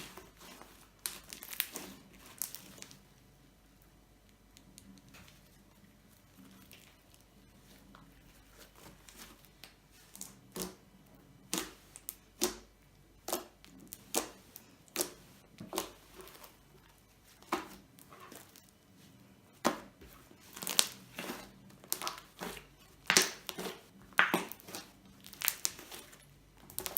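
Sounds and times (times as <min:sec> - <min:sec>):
slime popping and crackling: 0:00.0 - 0:03.0, 0:11.4 - 0:16.6, 0:19.6 - 0:26.9
slime squished by hand: 0:11.4 - 0:16.6, 0:19.5 - 0:26.9.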